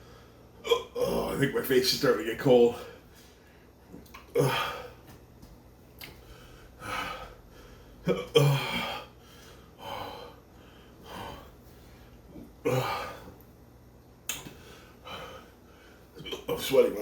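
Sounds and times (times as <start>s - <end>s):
man breathing hard: 0.0s - 0.5s, 6.2s - 13.4s, 14.5s - 16.2s
man hiccupping: 0.6s - 1.3s, 4.1s - 5.1s, 8.0s - 9.1s, 12.3s - 13.3s.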